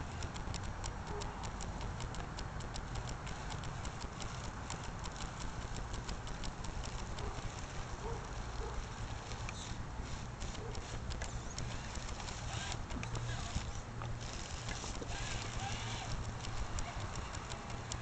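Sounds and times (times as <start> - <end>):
steady low rumble: 0.0 - 18.0.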